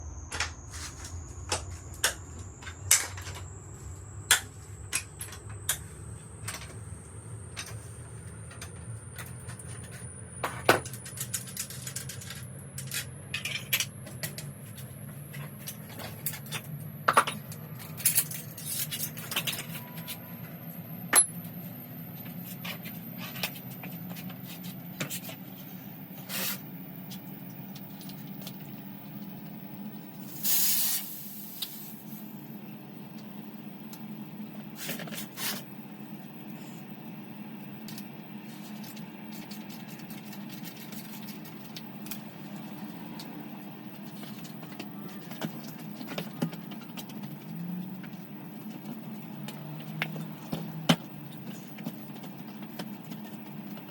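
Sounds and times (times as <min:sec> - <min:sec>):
low steady hum: 0:00.0 - 0:53.9.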